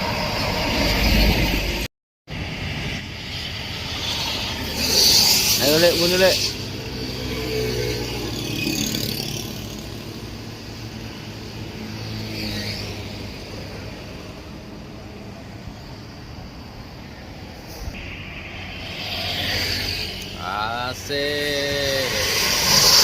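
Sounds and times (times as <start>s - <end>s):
heavy vehicle engines: 0.0s - 23.0s.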